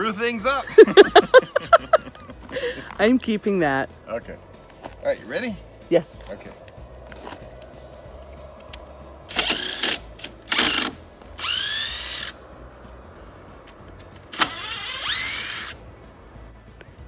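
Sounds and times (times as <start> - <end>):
impact driver bursts: 9.3 - 12.4, 14.4 - 15.8.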